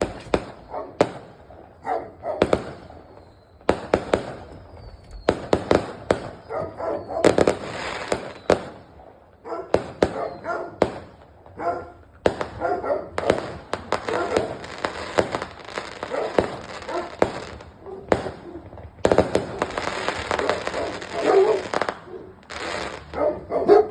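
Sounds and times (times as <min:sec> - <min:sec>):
fireworks banging: 0:00.0 - 0:23.9
dog barking: 0:00.7 - 0:01.0, 0:01.8 - 0:02.6, 0:06.4 - 0:07.4, 0:09.4 - 0:10.9, 0:11.5 - 0:14.7, 0:16.0 - 0:17.2, 0:17.8 - 0:18.7, 0:20.3 - 0:22.4, 0:23.0 - 0:23.9.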